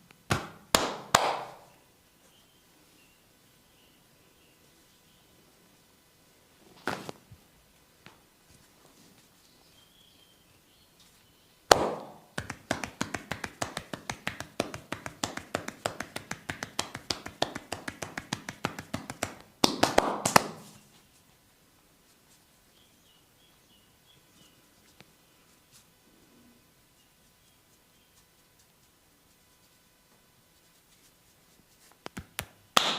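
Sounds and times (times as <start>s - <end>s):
hand slaps: 0.3s - 1.7s, 11.7s - 20.8s, 32.0s - 32.9s
quick taps on a head: 11.7s - 20.8s, 32.1s - 32.9s.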